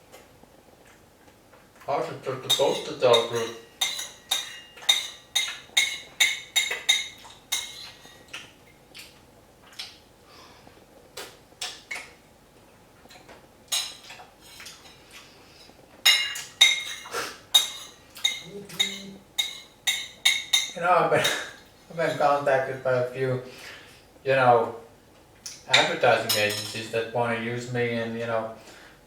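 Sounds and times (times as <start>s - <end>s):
hard objects clinking and tapping: 2.6s - 8.2s, 16.1s - 20.8s.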